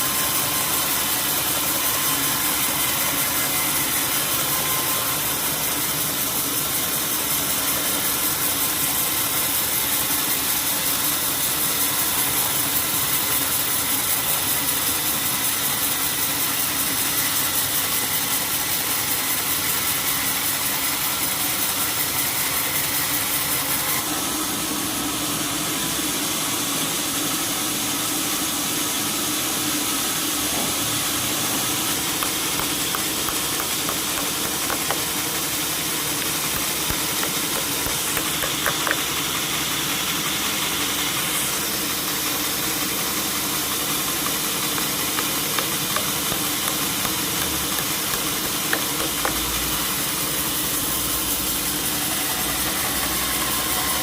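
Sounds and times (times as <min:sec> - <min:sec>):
sawmill machinery drone: 0:00.0 - 0:54.0.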